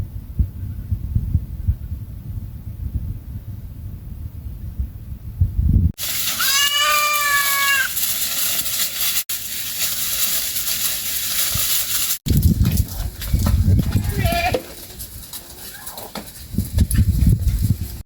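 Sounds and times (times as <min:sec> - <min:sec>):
goat bleating: 0:06.3 - 0:07.9, 0:13.8 - 0:14.8.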